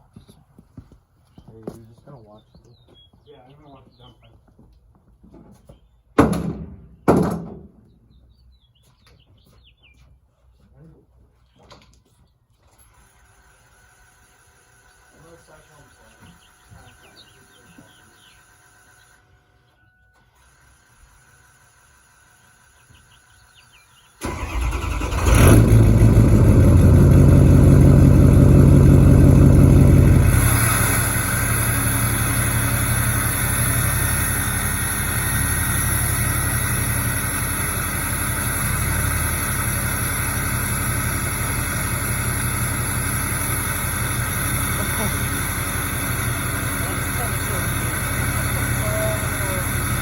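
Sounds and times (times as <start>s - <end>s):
diesel truck engine starting and idling: 24.2s - 50.0s.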